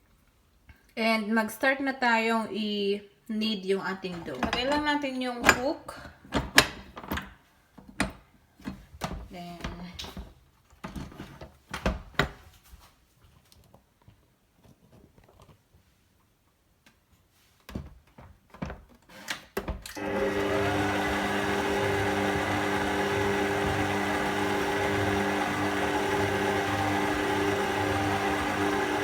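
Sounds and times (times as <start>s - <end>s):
dough churning: 20.0s - 29.0s
stand mixer motor humming: 20.0s - 29.0s.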